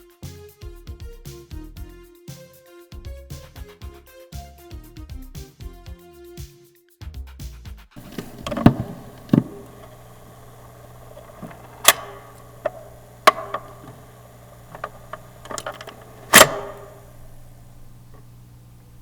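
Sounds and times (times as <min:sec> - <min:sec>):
low steady hum: 0:08.0 - 0:19.0
typewriter clacks: 0:08.0 - 0:19.0.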